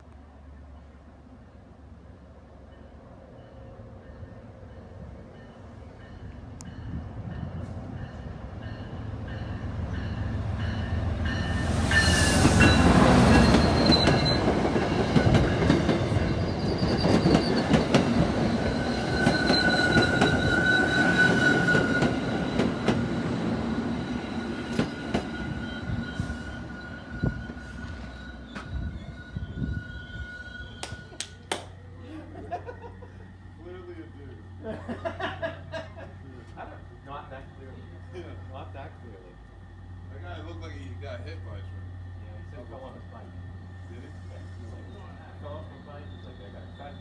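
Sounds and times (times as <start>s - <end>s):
train passing: 0.2s - 47.0s
train cars clacking over rails: 4.8s - 31.7s
high-pitched wheel squeal: 11.5s - 31.2s, 44.1s - 47.0s.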